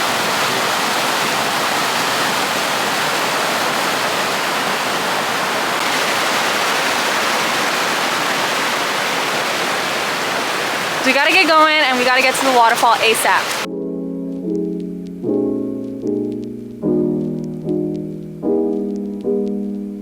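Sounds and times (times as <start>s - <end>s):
stream water rushing: 0.0s - 13.7s.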